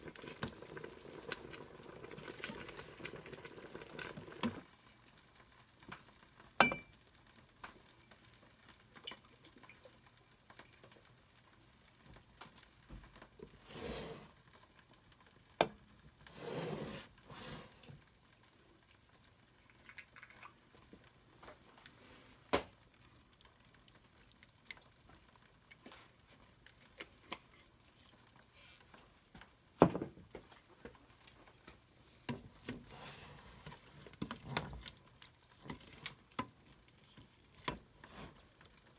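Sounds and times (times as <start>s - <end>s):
pots and utensils clinking: 6.6s - 7.0s.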